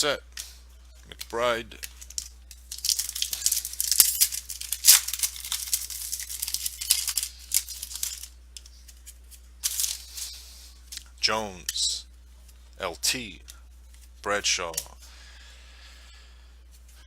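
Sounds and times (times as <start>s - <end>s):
foil wrapper tearing and crinkling: 2.7s - 8.3s.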